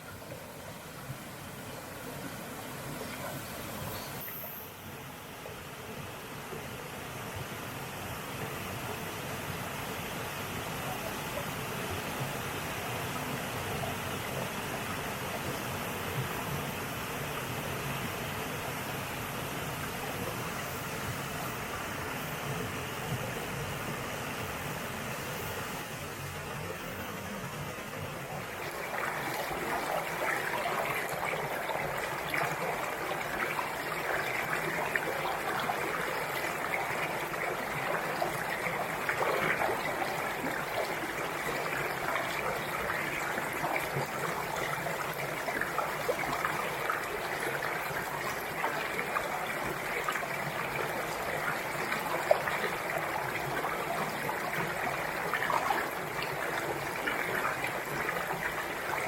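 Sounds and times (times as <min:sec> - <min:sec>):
stream running over rocks: 0:27.4 - 0:59.0.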